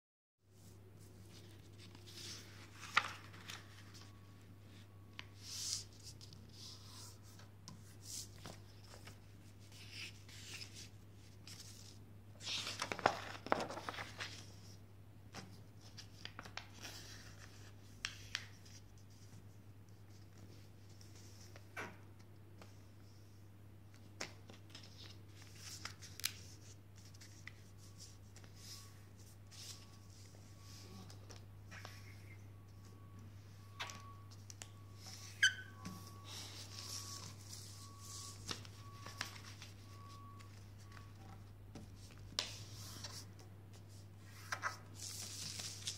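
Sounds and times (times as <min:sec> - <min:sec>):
low electrical hum: 0:00.5 - 0:45.9
paper rustling and folding: 0:00.6 - 0:21.7, 0:23.9 - 0:33.0, 0:33.7 - 0:45.9.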